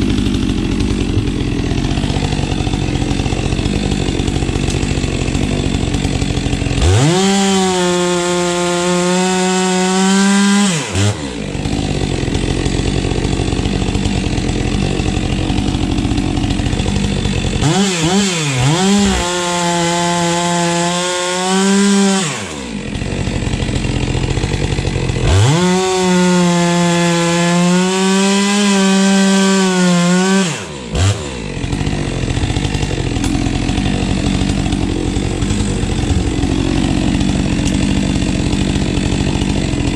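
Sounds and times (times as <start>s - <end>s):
chainsaw cutting logs: 0.0s - 39.9s.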